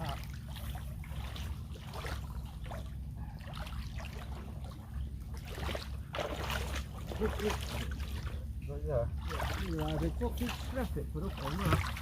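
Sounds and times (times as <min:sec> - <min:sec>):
water splashing and lapping: 0:00.0 - 0:12.0.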